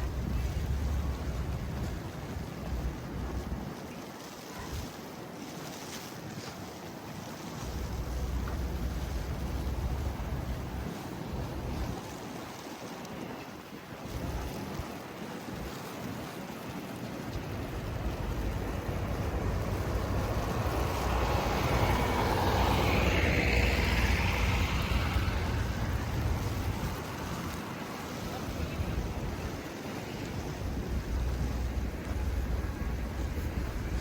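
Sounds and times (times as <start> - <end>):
vehicle passing: 0.0 - 3.6, 7.6 - 12.0, 14.1 - 14.6, 17.3 - 34.0
wind noise: 0.0 - 3.8, 7.6 - 12.2, 14.0 - 34.0.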